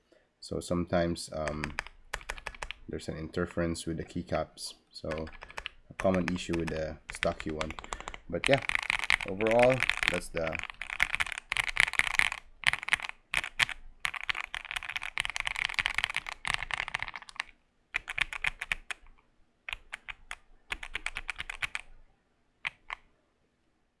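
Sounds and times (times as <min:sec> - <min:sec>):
mechanical keyboard typing: 0:01.4 - 0:03.0, 0:05.0 - 0:22.0, 0:22.6 - 0:23.0.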